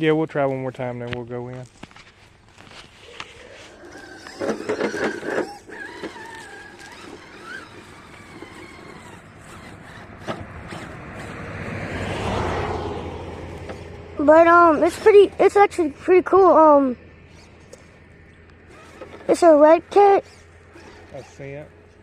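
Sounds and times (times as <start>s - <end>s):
electric motor whine: 3.1s - 11.5s, 18.6s - 22.0s.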